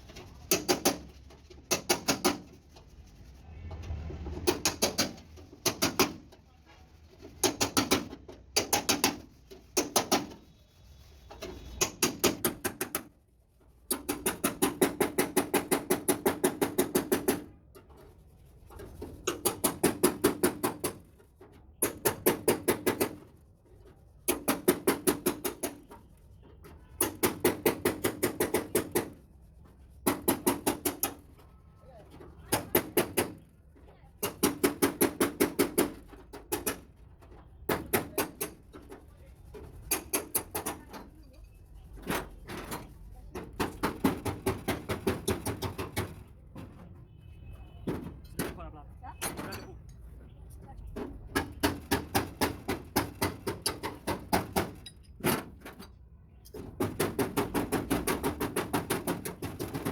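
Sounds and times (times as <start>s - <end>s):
hammer blows on sheet metal: 51.0s - 55.6s.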